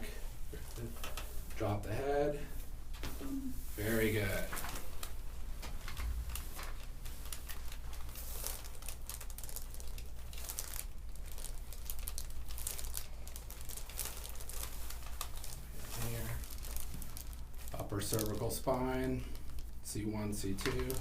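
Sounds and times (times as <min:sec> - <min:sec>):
crinkling and rustling: 0:00.5 - 0:01.8, 0:02.9 - 0:21.0.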